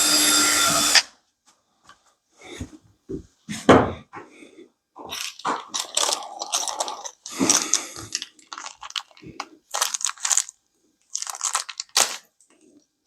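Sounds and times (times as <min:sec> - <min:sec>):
plastic packaging crinkling: 0:05.1 - 0:12.8.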